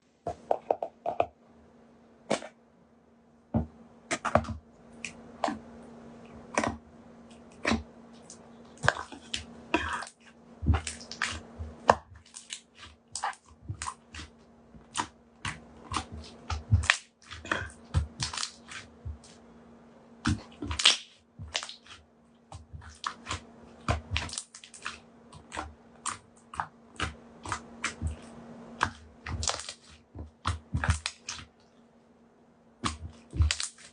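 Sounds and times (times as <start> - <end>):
slime squishing and popping: 7.5 - 19.4, 20.2 - 28.2, 28.8 - 31.5, 32.8 - 33.9.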